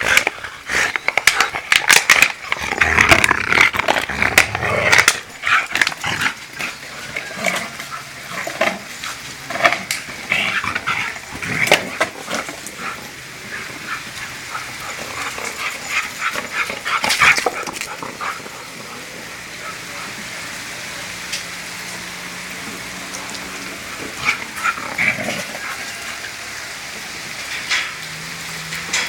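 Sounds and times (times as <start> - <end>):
dog chewing plastic bottle: 0.0 - 13.0, 15.0 - 18.5.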